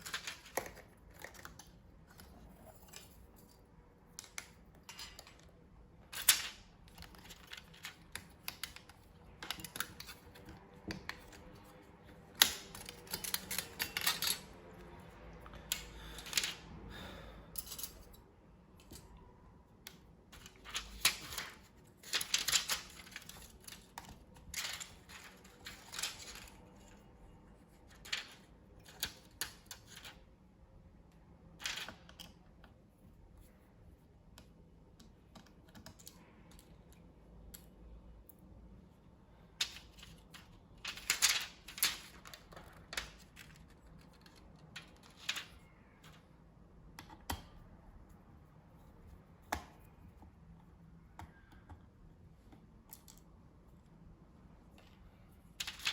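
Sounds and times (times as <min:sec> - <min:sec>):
clicks and taps of small parts: 0:46.9 - 0:47.6.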